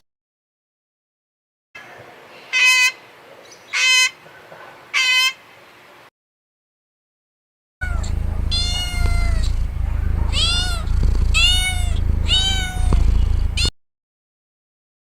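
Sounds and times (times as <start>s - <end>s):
cat meowing: 7.8s - 13.7s
steady low rumble: 7.8s - 13.7s.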